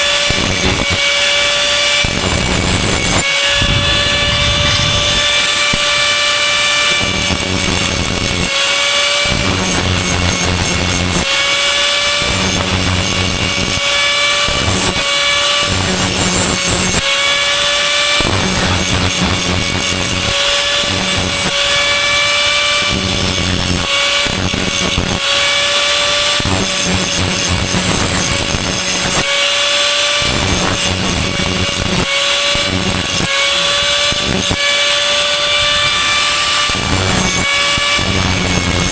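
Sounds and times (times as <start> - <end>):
angle grinder on steel: 0.0 - 38.9.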